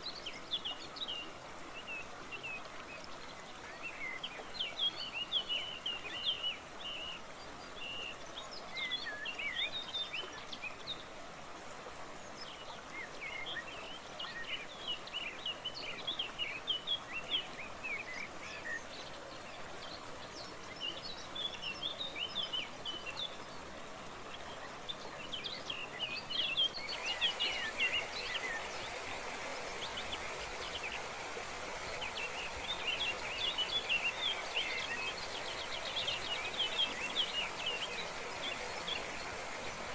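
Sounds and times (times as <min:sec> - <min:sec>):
small birds chirping: 0:12.4 - 0:39.9
waterfall rushing: 0:26.4 - 0:39.9.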